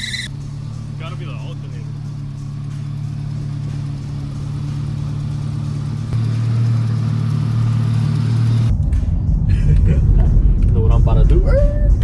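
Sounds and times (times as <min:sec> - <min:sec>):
pickup engine running: 0:00.0 - 0:08.8.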